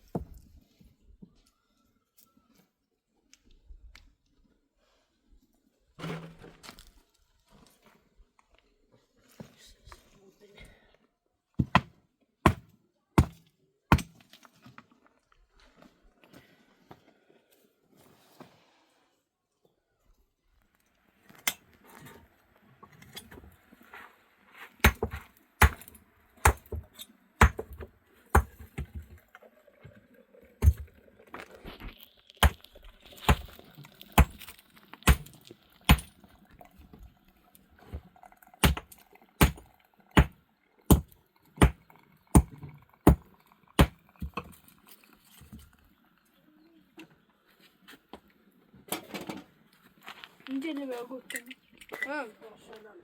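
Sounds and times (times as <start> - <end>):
hand tool striking hard surface: 24.8 - 26.8, 27.4 - 29.0, 35.1 - 35.3, 38.6 - 39.6.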